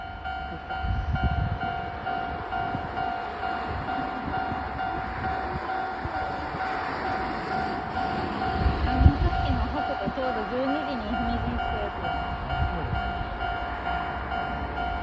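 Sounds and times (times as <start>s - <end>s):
low train rumble: 0.0s - 15.0s
level crossing bell ringing: 7.6s - 15.0s.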